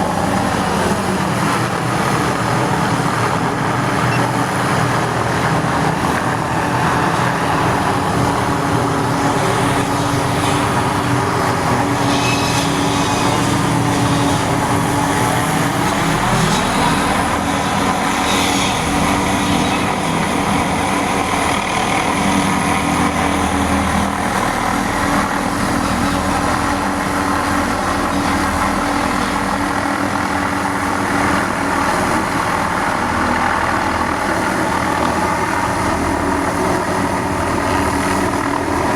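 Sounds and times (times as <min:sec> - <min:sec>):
helicopter engine and rotors: 0:00.0 - 0:38.9.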